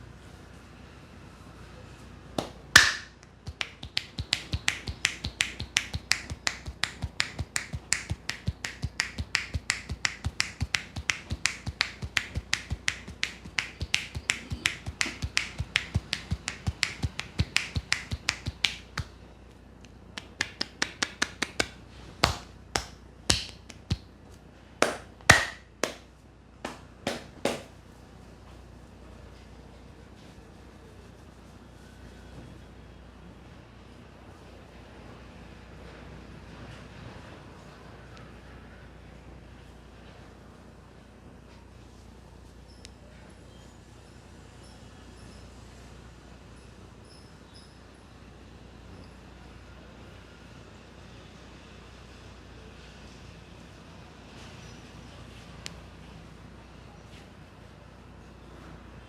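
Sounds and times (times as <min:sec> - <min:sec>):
hands striking head: 0:02.4 - 0:19.1, 0:20.2 - 0:24.0, 0:24.8 - 0:26.1, 0:26.7 - 0:27.7.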